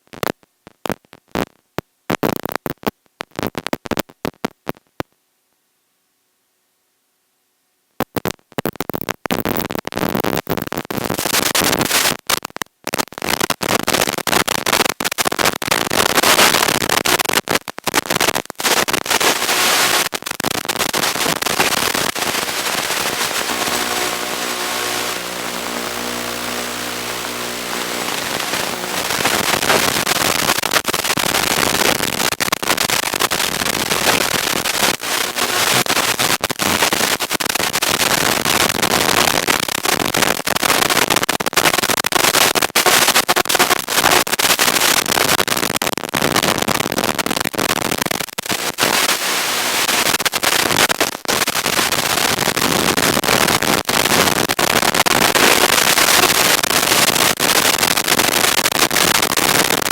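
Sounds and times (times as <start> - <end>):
harsh crackling hiss: 8.0 - 59.9
electric motor whine: 22.3 - 29.1.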